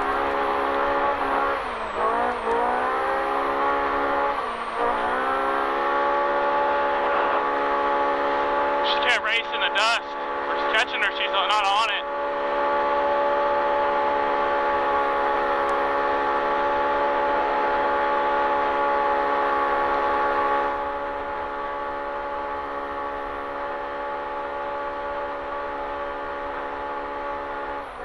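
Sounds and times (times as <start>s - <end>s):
engine droning under load: 0.0s - 28.0s
road and wind noise: 0.0s - 28.0s.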